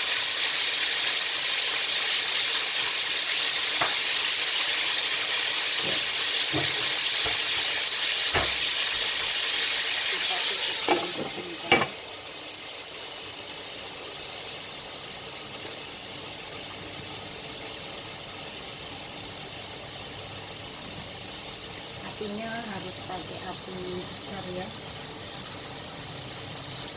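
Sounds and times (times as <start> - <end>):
fish sizzling in hot oil: 0.0 - 26.9
utensil knocking against pan: 3.8 - 4.1, 5.8 - 7.7, 8.3 - 8.8, 10.8 - 12.0.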